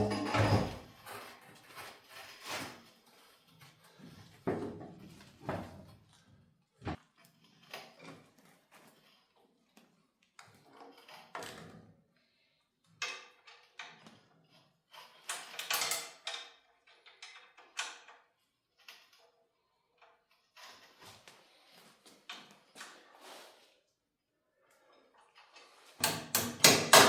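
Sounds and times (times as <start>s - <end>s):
metal parts clanking and rattling: 0.0s - 2.8s, 15.1s - 18.2s, 25.4s - 27.0s.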